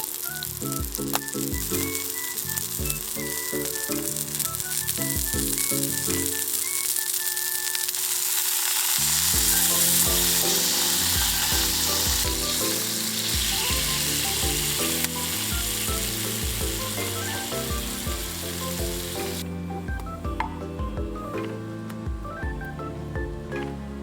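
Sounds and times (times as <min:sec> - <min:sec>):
background music: 0:00.0 - 0:07.9, 0:09.0 - 0:24.0
food sizzling in a hot pan: 0:01.9 - 0:19.4.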